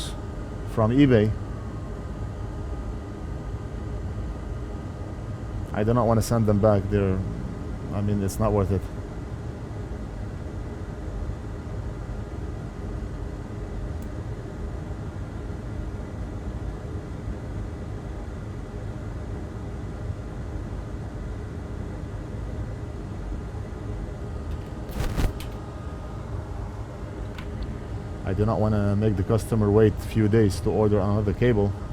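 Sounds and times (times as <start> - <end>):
low background rumble: 0.0 - 16.5
faint steady whine: 0.0 - 31.9.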